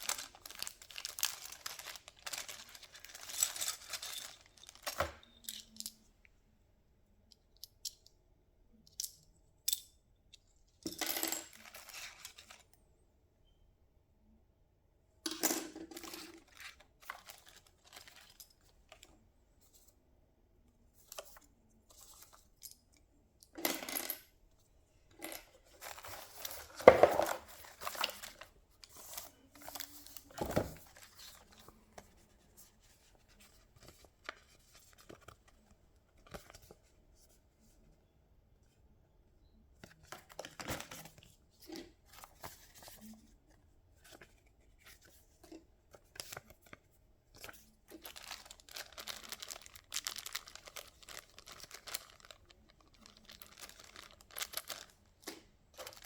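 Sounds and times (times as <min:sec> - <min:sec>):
packaging rustling and scraping: 0:00.0 - 0:05.3, 0:16.0 - 0:18.6, 0:25.1 - 0:35.2, 0:47.4 - 0:56.0.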